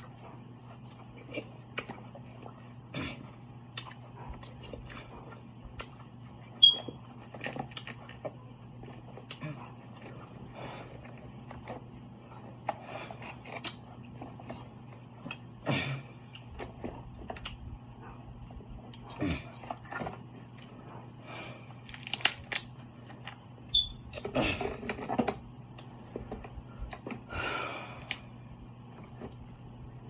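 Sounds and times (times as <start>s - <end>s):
chewing and mouth sounds: 0.0s - 15.6s
low steady hum: 0.0s - 30.0s
seafood shells cracking and crinkling: 7.1s - 10.2s, 21.8s - 23.4s, 28.0s - 28.3s.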